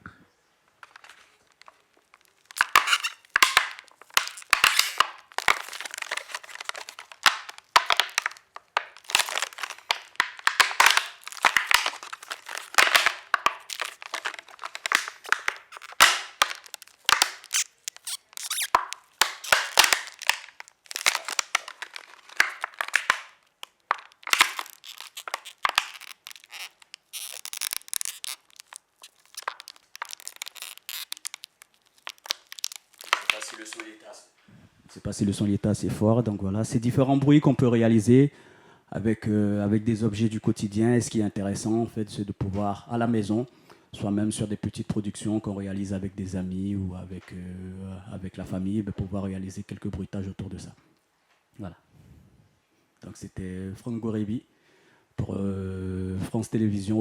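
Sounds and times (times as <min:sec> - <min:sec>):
plastic bottle crackling and creaking: 0:00.8 - 0:34.1.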